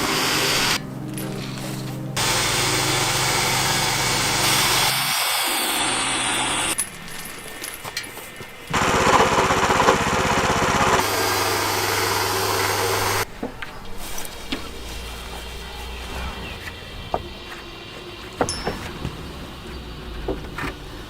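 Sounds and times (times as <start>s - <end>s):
engine-driven cutting machinery: 0.0s - 6.8s, 8.7s - 13.3s.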